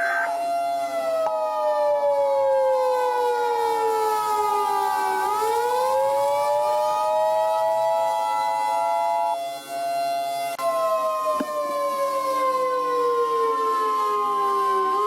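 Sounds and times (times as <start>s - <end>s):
two-tone alert beep: 0.0s - 0.3s
outdoor warning siren wailing: 0.0s - 15.0s.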